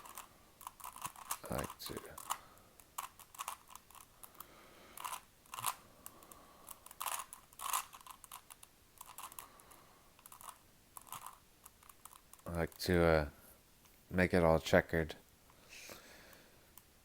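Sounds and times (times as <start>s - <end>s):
puzzle cube clicking: 0.0s - 12.8s.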